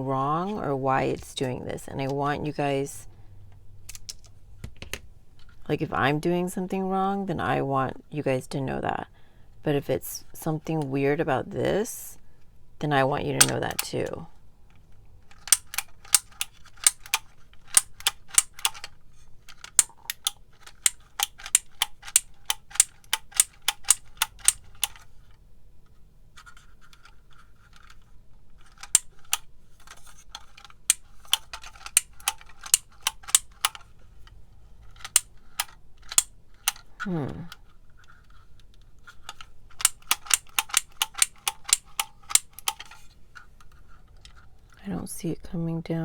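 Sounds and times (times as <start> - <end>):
label maker clicking: 19.8 - 25.0, 39.8 - 42.8.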